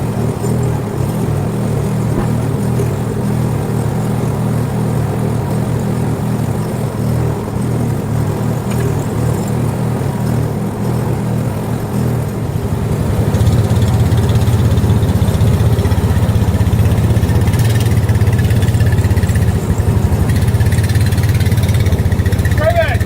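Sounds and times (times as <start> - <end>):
engine running with low throb: 0.0 - 23.0.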